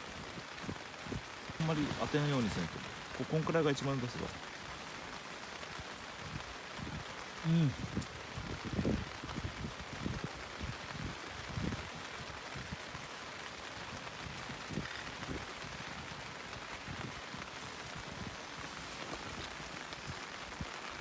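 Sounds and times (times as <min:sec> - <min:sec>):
steady rain hiss: 0:00.0 - 0:21.0
raindrop taps: 0:00.2 - 0:21.0.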